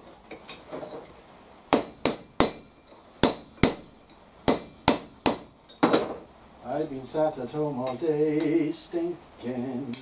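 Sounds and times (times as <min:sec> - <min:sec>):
hammer striking metal: 0:01.7 - 0:06.2.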